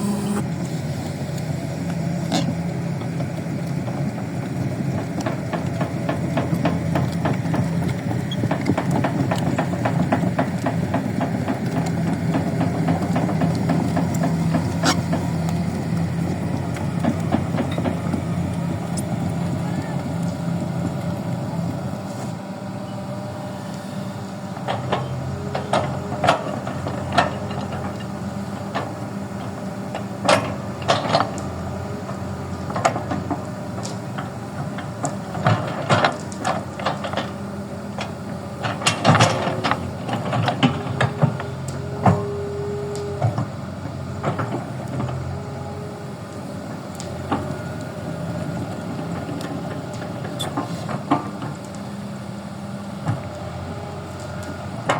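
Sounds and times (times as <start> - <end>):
small motor humming: 0.0 - 0.4.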